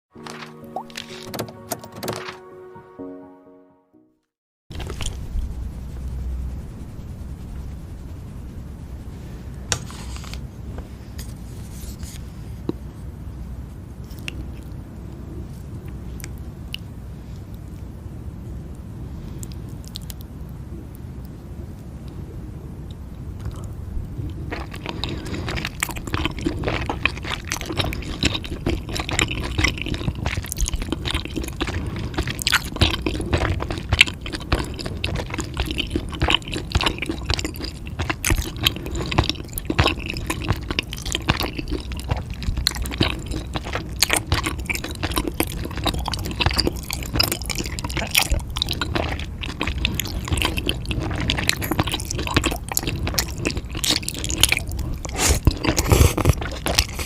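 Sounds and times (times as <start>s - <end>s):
wet chewing mouth sounds: 4.7s - 5.2s, 14.0s - 17.9s, 22.8s - 57.0s.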